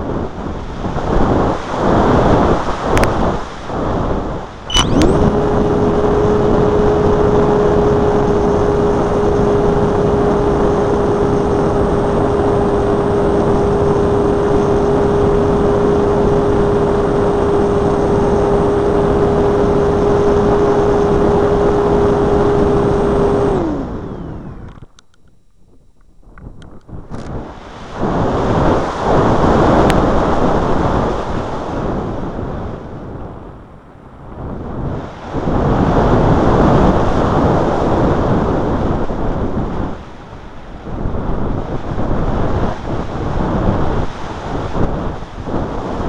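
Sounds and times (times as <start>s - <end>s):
wind rush: 0.0s - 24.7s, 26.4s - 46.0s
electric motor and propeller: 4.7s - 25.3s, 26.3s - 31.8s.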